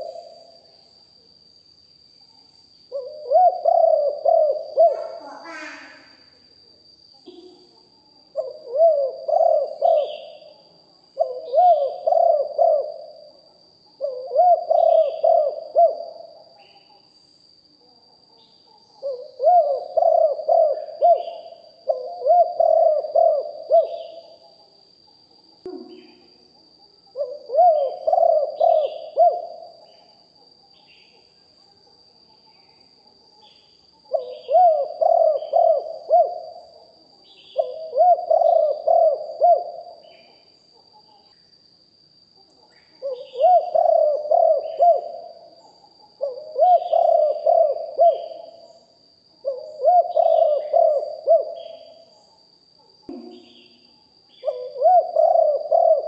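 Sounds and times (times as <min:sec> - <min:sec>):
dove cooing: 0:00.0 - 0:00.6, 0:02.9 - 0:06.2, 0:07.3 - 0:17.0, 0:18.6 - 0:24.7, 0:25.7 - 0:30.1, 0:34.1 - 0:41.3, 0:42.6 - 0:48.8, 0:49.4 - 0:52.1, 0:53.1 - 0:56.0.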